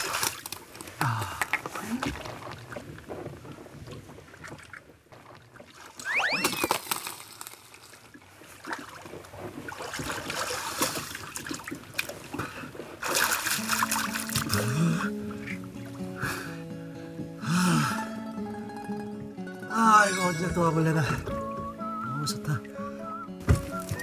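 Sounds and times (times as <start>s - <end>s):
water splashing and sloshing: 0.0s - 24.0s.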